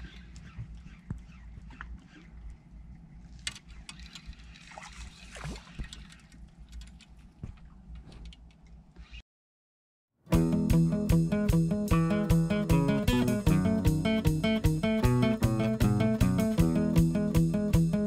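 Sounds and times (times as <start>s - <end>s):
water gurgling and sloshing: 0.0s - 8.0s
acoustic guitar music: 10.3s - 18.0s.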